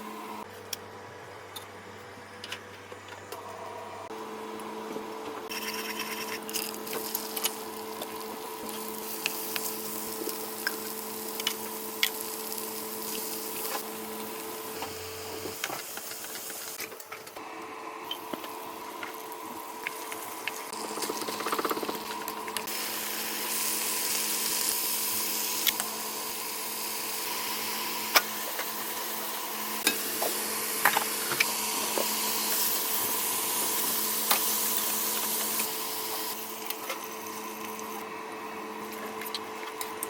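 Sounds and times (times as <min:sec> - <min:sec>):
mechanical hum: 0:00.0 - 0:40.0
rice sizzling in a pan: 0:05.5 - 0:16.8, 0:22.7 - 0:37.9.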